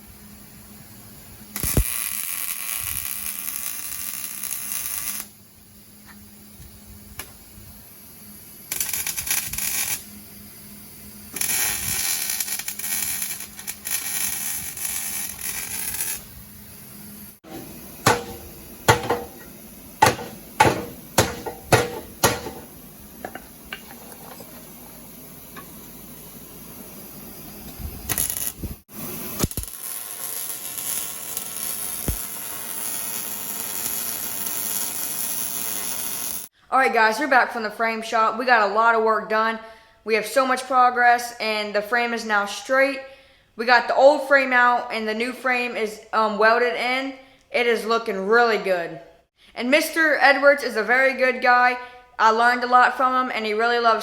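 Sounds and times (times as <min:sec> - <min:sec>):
harsh hissing noise: 0:02.8 - 0:33.1
steady machine noise: 0:16.4 - 0:23.5
sharp metal strikes: 0:17.4 - 0:22.8.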